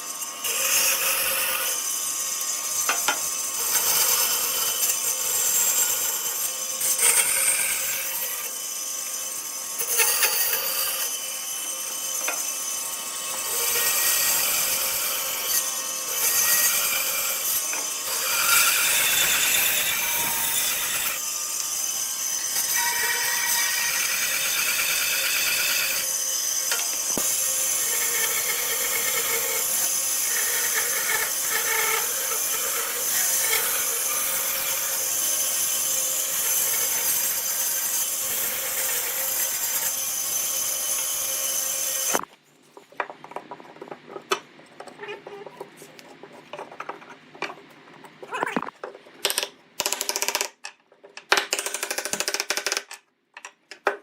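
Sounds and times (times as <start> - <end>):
woodworking power tool running: 0.0 - 42.2.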